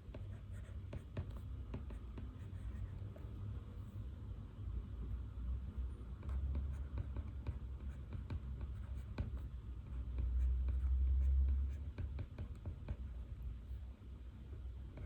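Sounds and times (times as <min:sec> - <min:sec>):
pen writing on paper: 0:00.1 - 0:02.9, 0:06.2 - 0:13.1.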